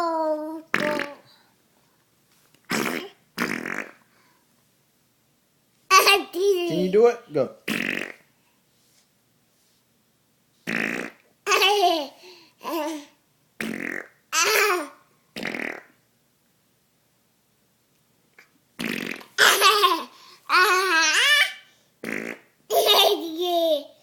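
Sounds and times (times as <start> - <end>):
baby giggling: 11.5 - 13.2, 14.4 - 15.0, 19.4 - 21.6, 22.7 - 23.9.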